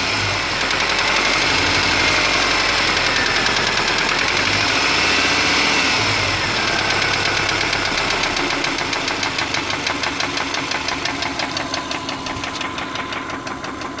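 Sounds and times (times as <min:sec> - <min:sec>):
car engine idling: 0:00.0 - 0:14.0
rapid engine knocking: 0:00.0 - 0:14.0.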